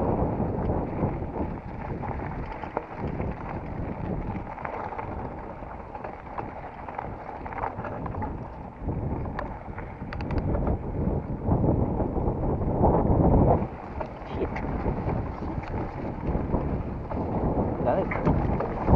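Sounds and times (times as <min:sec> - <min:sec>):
wind buffeting microphone: 0:00.0 - 0:18.9
bike clicks and rattles: 0:00.5 - 0:11.1
tyre rumble on dirt: 0:00.7 - 0:10.7.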